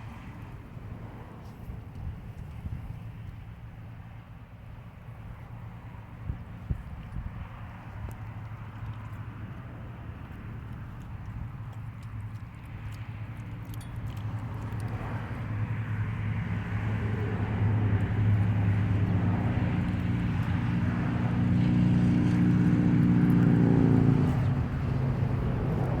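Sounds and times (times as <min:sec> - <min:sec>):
vehicle engine running: 0:08.2 - 0:26.0.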